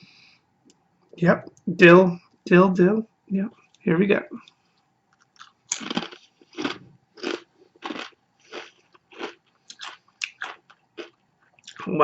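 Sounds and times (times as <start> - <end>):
potato chip crunching: 5.1 - 11.9.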